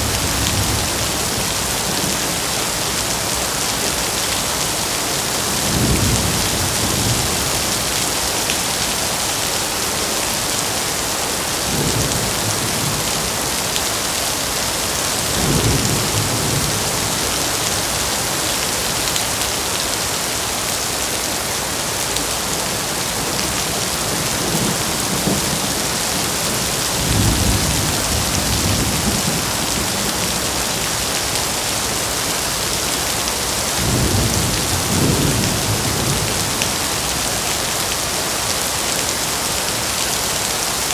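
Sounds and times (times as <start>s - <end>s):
heavy rain falling: 0.0s - 40.9s
thunder rumbles: 23.0s - 31.0s, 33.7s - 37.2s.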